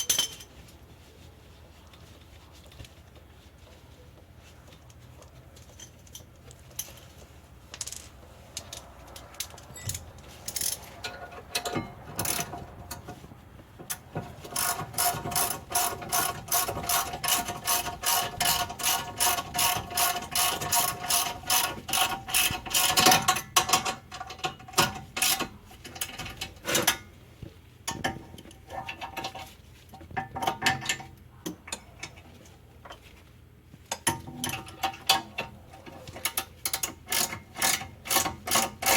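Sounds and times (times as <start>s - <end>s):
ratchet wrench clicking: 13.9s - 23.4s.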